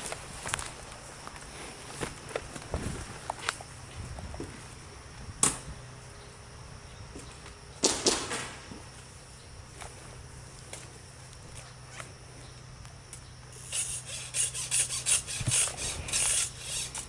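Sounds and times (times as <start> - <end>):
airsoft gun shots: 7.8 - 8.7.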